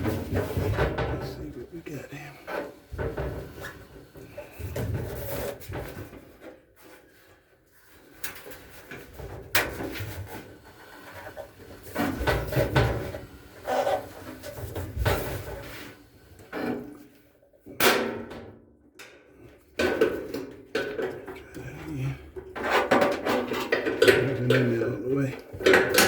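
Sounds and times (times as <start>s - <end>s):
metal parts clattering and scraping: 22.6s - 25.0s.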